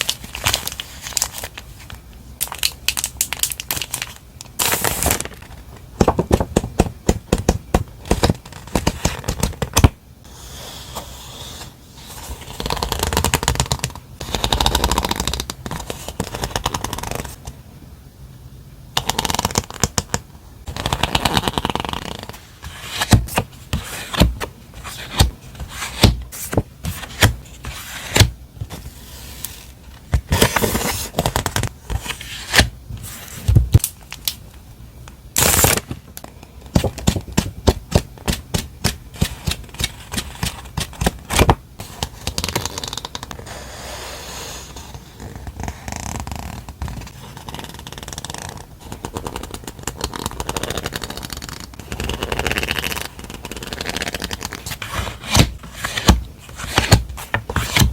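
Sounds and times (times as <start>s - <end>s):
packaging crinkling: 0.0s - 5.7s.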